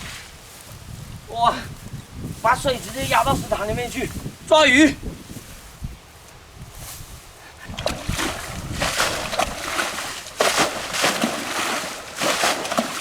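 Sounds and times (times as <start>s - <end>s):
water splashing down: 7.7s - 13.0s.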